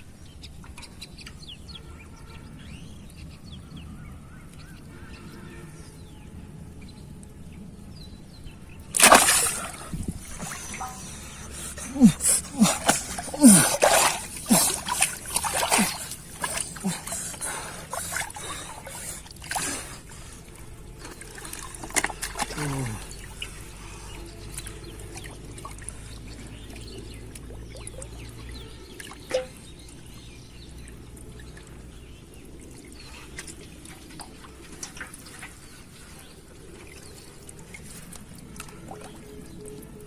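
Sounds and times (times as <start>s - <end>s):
small clicks and splashes: 0.3s - 1.5s, 8.9s - 11.0s, 20.9s - 40.0s
water trickling: 8.4s - 40.0s.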